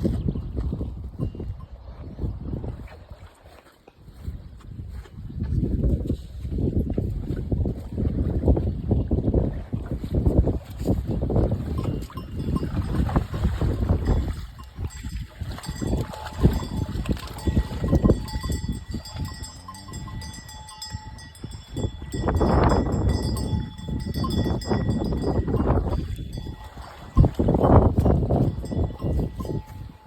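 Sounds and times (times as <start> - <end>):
wind buffeting microphone: 0.0 - 30.0
cow bells clanking: 0.3 - 1.8, 11.1 - 30.0.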